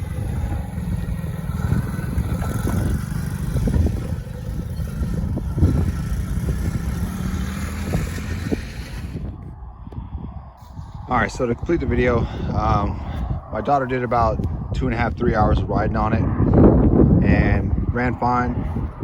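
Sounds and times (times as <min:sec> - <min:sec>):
engine knocks: 0:00.0 - 0:09.3
small engine humming: 0:00.0 - 0:09.4.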